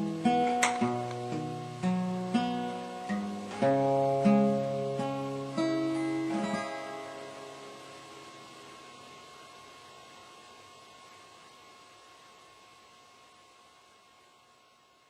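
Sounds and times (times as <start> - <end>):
acoustic guitar strumming chords: 0.0 - 9.0.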